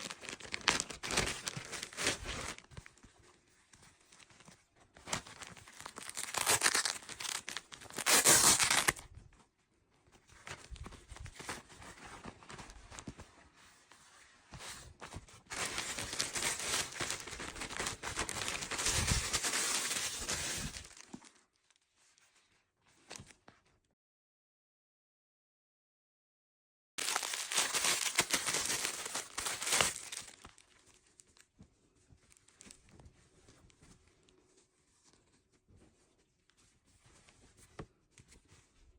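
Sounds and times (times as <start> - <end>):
packaging ripping: 0.0 - 2.6, 5.3 - 9.0, 15.5 - 21.3, 27.0 - 30.6
packaging crinkling: 0.0 - 2.7, 5.1 - 9.0, 15.5 - 21.4, 27.0 - 30.9.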